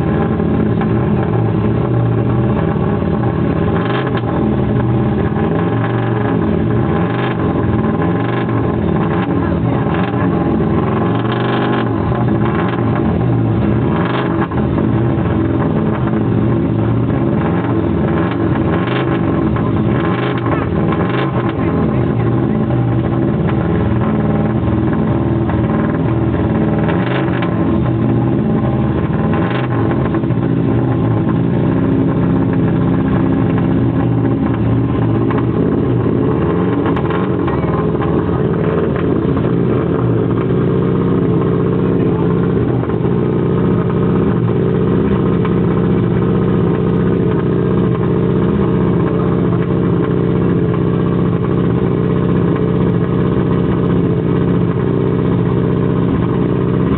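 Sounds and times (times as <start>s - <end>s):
car engine idling loudly: 0.0s - 56.9s
sharp exhaust cracks: 0.0s - 56.9s.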